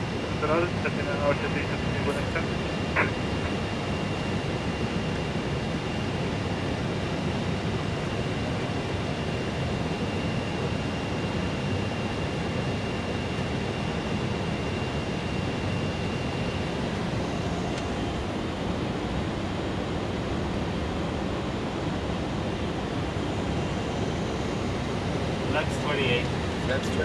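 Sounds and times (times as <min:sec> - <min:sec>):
faint high whine: 0:00.0 - 0:06.2, 0:10.0 - 0:27.0
airliner cockpit rushing noise: 0:00.3 - 0:04.1.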